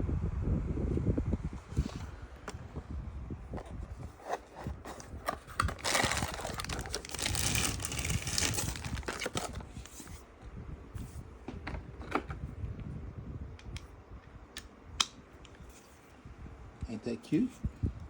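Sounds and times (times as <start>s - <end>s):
packaging crinkling: 4.9s - 9.7s.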